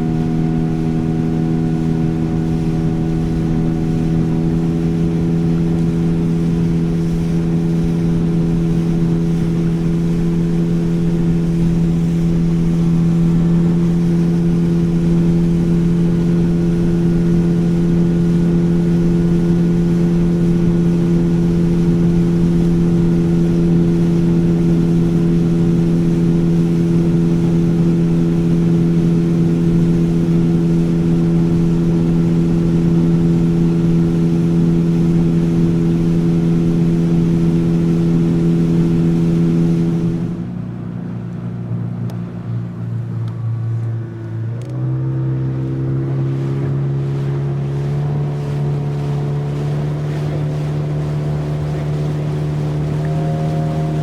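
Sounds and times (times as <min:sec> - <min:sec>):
steady rushing noise: 0:00.0 - 0:41.0
motorboat engine running: 0:00.0 - 0:54.0.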